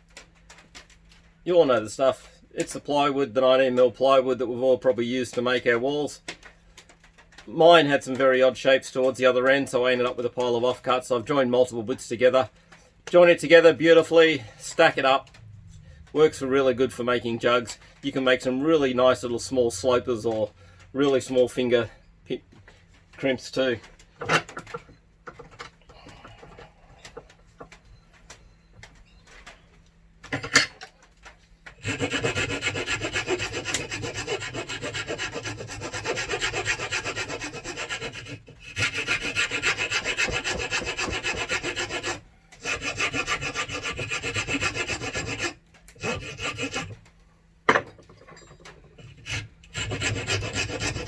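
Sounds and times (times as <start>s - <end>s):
file scraping wood: 31.8s - 47.0s, 48.9s - 51.0s.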